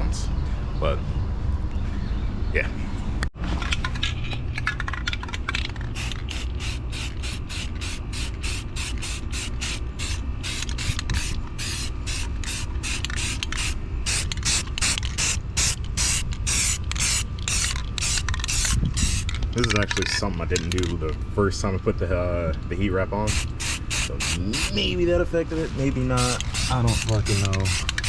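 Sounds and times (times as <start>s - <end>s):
aerosol can ball rattling: 4.6s - 21.0s, 26.2s - 28.0s.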